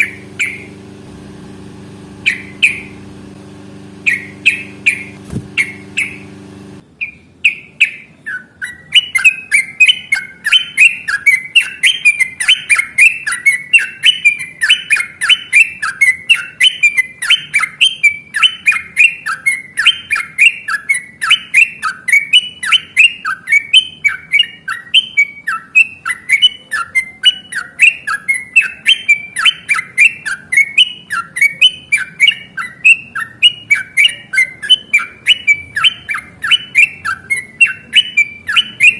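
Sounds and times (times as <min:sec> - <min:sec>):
bubbly bird chirping: 0:00.0 - 0:00.8, 0:02.2 - 0:03.0, 0:04.0 - 0:06.3
low hum: 0:00.0 - 0:06.8.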